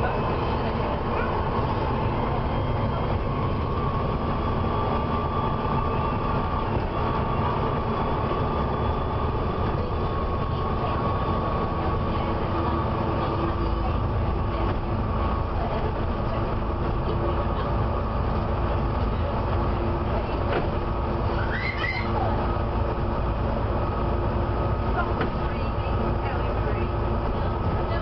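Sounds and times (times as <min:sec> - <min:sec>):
bus diesel engine running: 0:00.0 - 0:28.0
fan belt squealing: 0:21.2 - 0:22.4.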